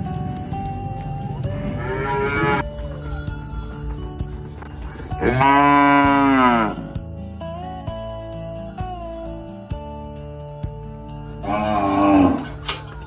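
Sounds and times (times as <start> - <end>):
background music: 0.0 - 13.0
cows mooing: 1.4 - 2.7, 5.0 - 7.0, 11.4 - 12.8.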